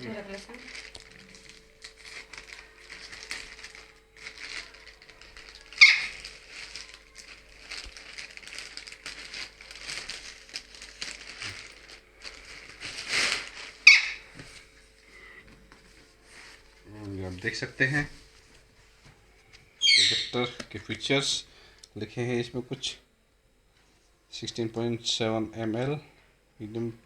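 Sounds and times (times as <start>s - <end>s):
packaging rustling and crinkling: 0.1s - 15.0s.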